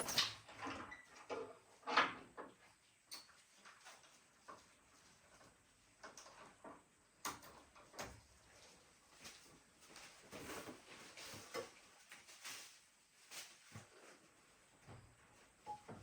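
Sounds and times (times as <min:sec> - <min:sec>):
rustling: 0:08.6 - 0:14.7.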